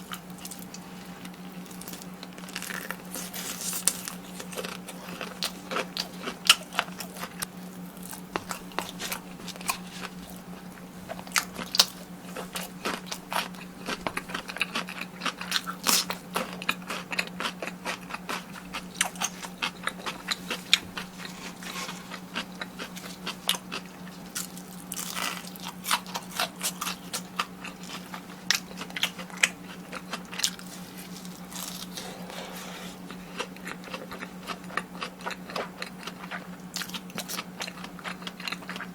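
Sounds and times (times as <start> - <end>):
crunching bites of fried food: 0.0 - 32.3, 32.9 - 38.9
steady low hum: 0.0 - 38.9.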